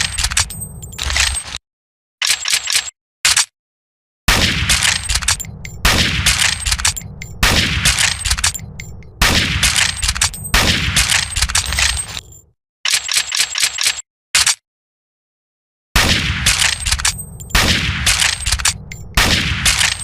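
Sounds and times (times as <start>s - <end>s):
rifle shots echoing: 4.3s - 12.1s, 16.0s - 20.0s
rifle bolt clicks: 4.7s - 14.6s, 16.5s - 20.0s.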